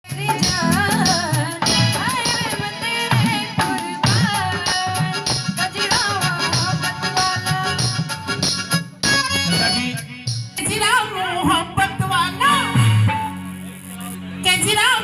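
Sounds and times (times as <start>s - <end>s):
steady drum beat: 0.0s - 10.8s.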